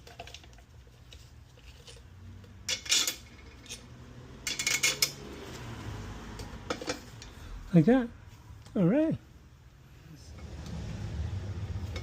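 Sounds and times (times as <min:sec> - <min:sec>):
metal parts clinking and rattling: 0:00.0 - 0:05.3.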